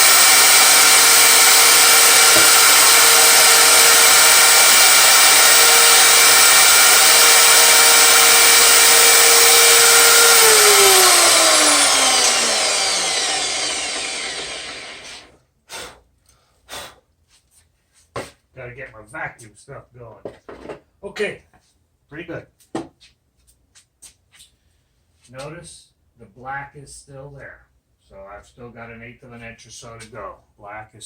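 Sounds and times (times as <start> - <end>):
power tool motor whining: 0.0 - 15.3.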